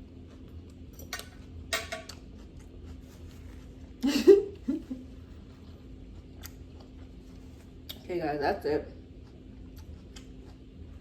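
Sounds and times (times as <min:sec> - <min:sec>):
utensils clinking against a dish: 0:01.1 - 0:02.2.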